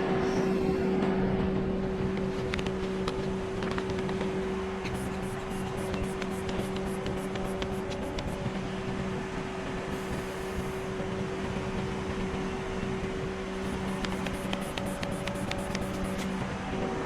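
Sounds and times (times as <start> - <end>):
steady hum: 0.0 - 17.0.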